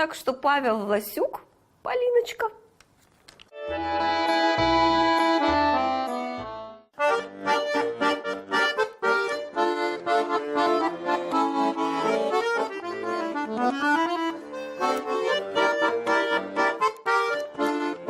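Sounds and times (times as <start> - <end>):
accordion playing folk music: 3.5 - 18.0
held chord: 3.6 - 18.0.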